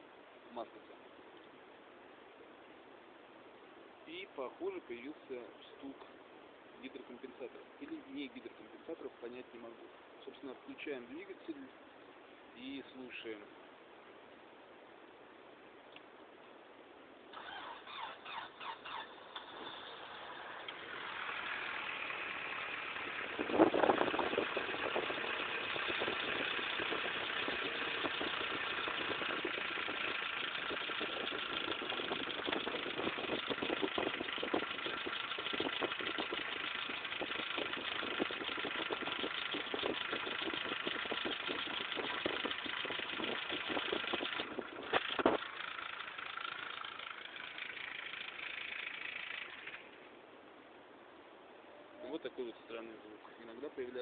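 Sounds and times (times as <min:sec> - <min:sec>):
engine starting: 0:17.3 - 0:50.0
engine idling with ticking knock: 0:17.3 - 0:50.1.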